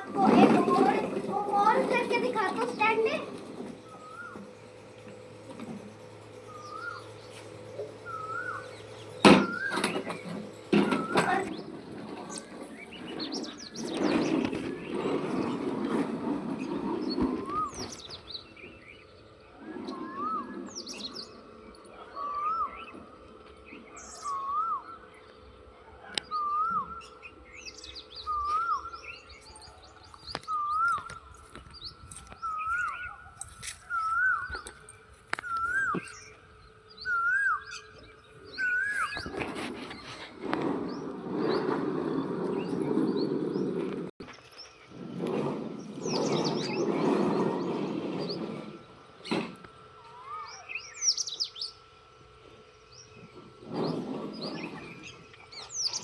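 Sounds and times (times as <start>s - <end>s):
birds chirping faintly: 0.0s - 56.0s
bird whistling short note: 8.0s - 8.7s, 19.9s - 21.1s, 24.0s - 25.0s, 33.8s - 34.6s, 37.0s - 37.9s
rumbling noise: 38.5s - 49.5s.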